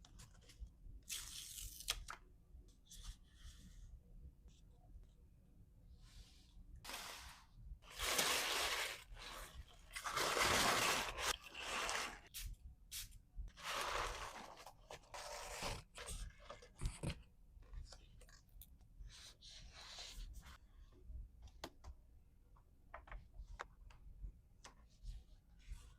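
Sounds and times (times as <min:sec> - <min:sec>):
packaging rustling and tearing: 0:07.9 - 0:12.3.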